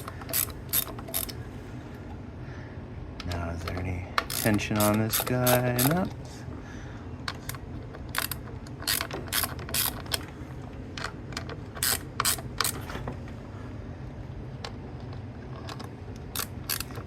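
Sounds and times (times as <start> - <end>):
ratchet wrench clicking: 0.0 - 1.4, 4.2 - 6.1, 7.5 - 10.2, 11.8 - 12.8, 16.3 - 17.0.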